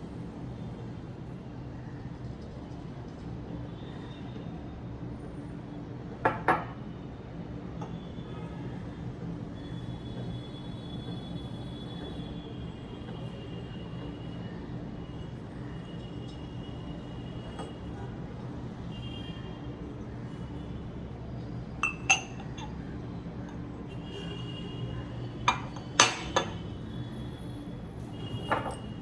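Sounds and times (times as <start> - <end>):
crockery clinking: 17.5 - 17.9, 21.8 - 22.8, 25.5 - 26.6, 28.4 - 28.9.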